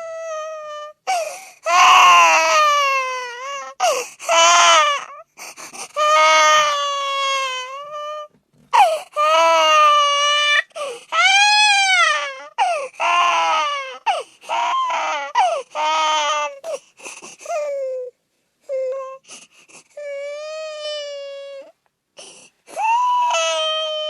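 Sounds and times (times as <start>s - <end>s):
infant crying: 0.0s - 24.0s.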